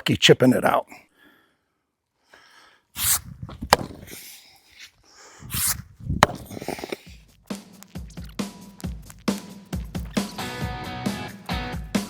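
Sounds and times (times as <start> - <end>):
tool striking concrete: 3.0 - 4.3, 5.6 - 7.1
scraping and crunching concrete: 3.0 - 5.0, 5.6 - 7.2.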